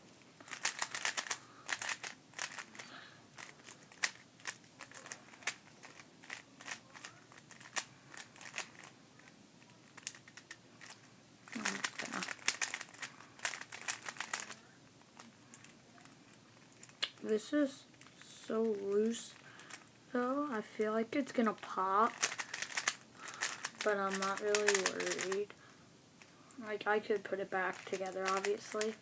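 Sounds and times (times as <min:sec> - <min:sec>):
speed cube clicking: 0:00.5 - 0:08.9, 0:10.0 - 0:14.6, 0:22.1 - 0:25.4, 0:27.7 - 0:29.0.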